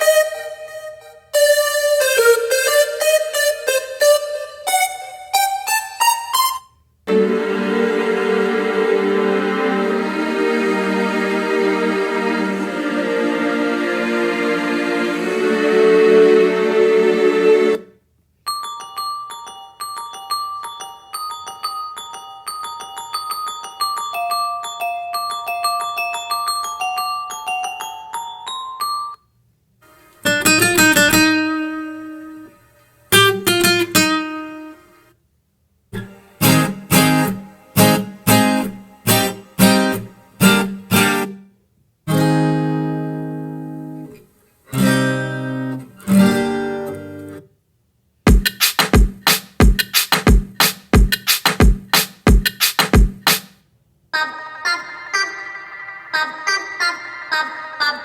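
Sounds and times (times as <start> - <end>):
plucked guitar-like notes: 36.0 - 41.3
deep bass beat: 48.3 - 53.2.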